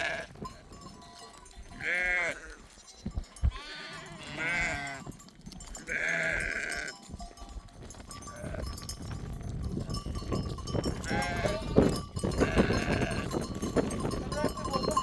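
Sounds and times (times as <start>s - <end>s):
sheep bleating: 0.0s - 0.3s, 1.0s - 2.8s, 3.5s - 5.1s, 5.8s - 7.0s, 11.0s - 11.8s, 12.4s - 13.4s.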